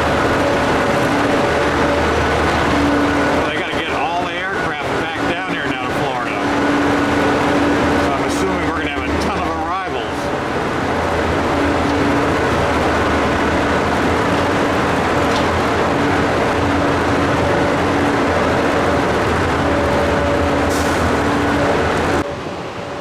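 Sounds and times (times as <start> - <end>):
loud engine noise: 0.0 - 23.0.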